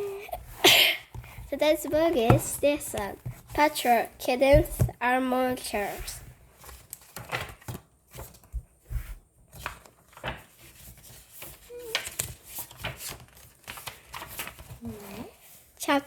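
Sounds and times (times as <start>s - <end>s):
paper rustling: 0.0s - 16.0s
light knocks of book handling: 1.1s - 3.8s.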